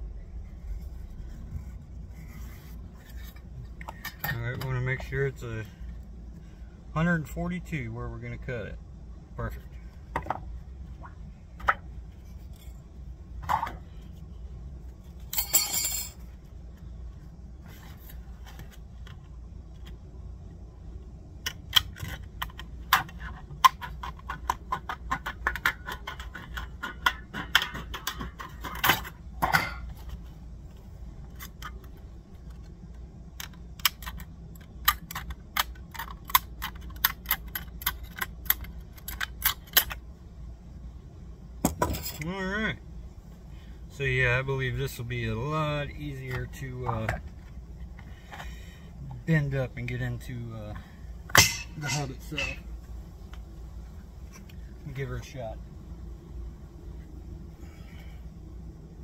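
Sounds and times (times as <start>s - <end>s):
light metallic clicks and clinks: 15.3s - 16.2s.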